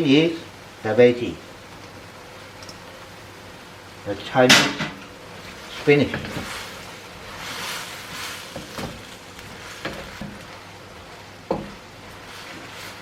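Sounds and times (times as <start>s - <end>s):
noodles sizzling in a pan: 0.0s - 13.0s
stirring knocks: 4.4s - 13.0s.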